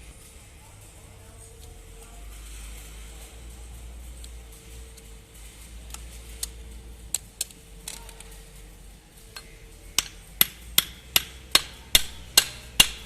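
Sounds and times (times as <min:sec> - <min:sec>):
hammer striking metal: 0:10.0 - 0:13.0.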